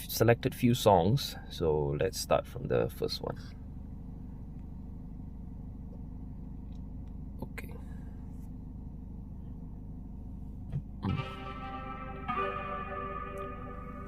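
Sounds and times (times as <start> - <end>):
low rumble in car cabin: 0.0 - 14.0
song over car speakers: 11.0 - 14.0.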